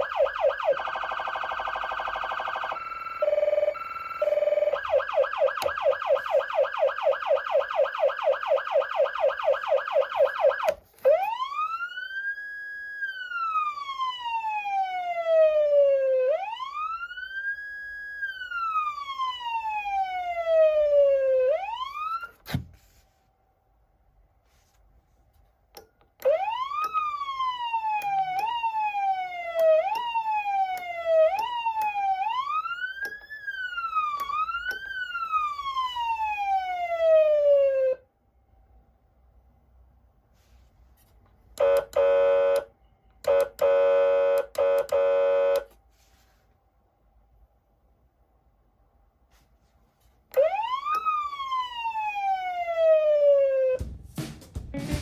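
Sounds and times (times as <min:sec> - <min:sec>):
electronic siren yelp and wail: 0:00.0 - 0:22.4, 0:26.2 - 0:38.0, 0:50.3 - 0:53.8
manual siren pulsing: 0:00.0 - 0:22.4, 0:26.2 - 0:38.0, 0:41.6 - 0:45.8, 0:50.3 - 0:53.9
siren switch click: 0:04.8 - 0:11.2, 0:34.1 - 0:35.0, 0:41.6 - 0:43.7, 0:44.4 - 0:45.8, 0:50.3 - 0:51.2.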